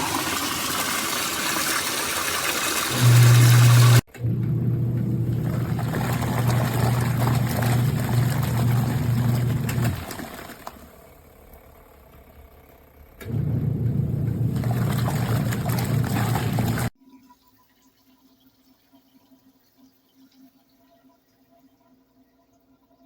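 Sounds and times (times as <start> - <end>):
water sloshing in tub: 0.0 - 11.0, 13.3 - 17.0
washing machine motor humming: 0.0 - 16.9.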